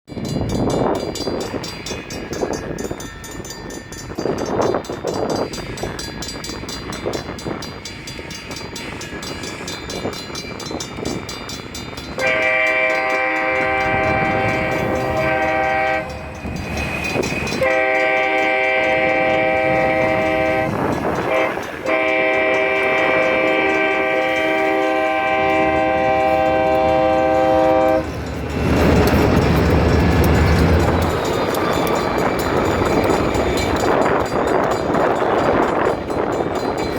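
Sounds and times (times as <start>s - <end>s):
locomotive rumble: 0.1s - 36.9s
locomotive air horn blasts: 12.2s - 16.4s, 17.6s - 28.2s.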